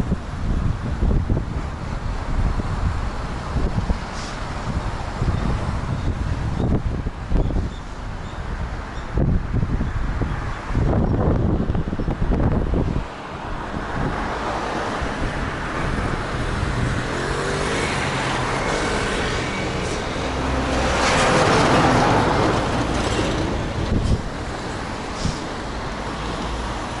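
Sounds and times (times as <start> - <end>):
vehicle engine hum: 0.0 - 27.0
vehicle passing: 12.5 - 27.0.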